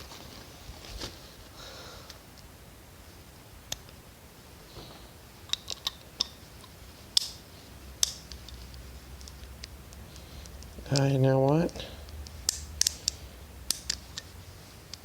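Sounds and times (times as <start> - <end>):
small metal parts clicking: 12.4 - 14.3.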